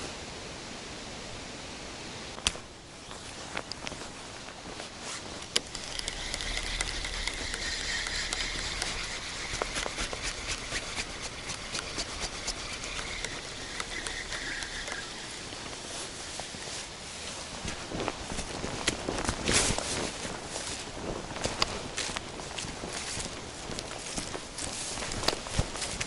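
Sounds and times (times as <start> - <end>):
wind rumbling on microphone: 0.0 - 26.0
rustling: 2.6 - 26.0
hiss: 6.1 - 17.0.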